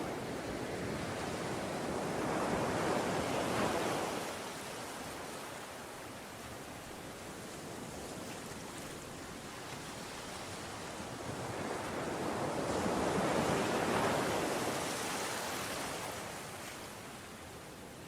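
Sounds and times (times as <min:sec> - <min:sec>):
ocean waves on shore: 0:00.0 - 0:18.0.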